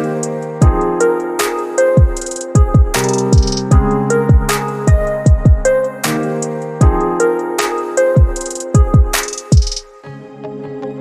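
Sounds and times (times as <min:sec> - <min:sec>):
electronic background music: 0:00.0 - 0:11.0
deep kick drum hits: 0:02.6 - 0:05.7.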